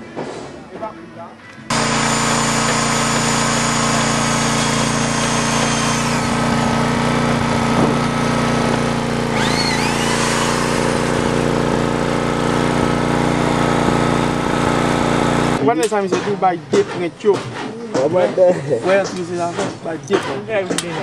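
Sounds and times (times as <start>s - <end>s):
small motor running: 1.7s - 15.6s.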